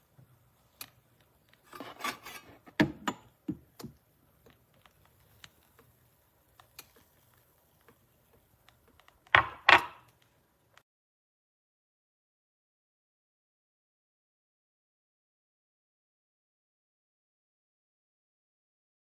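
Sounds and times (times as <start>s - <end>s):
small clicks and taps: 3.1s - 9.5s.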